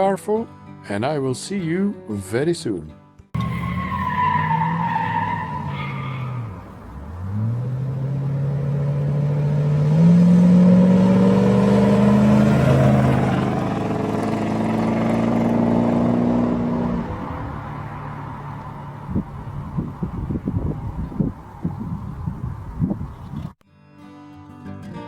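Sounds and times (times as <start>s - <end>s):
car engine revving: 3.4s - 20.0s.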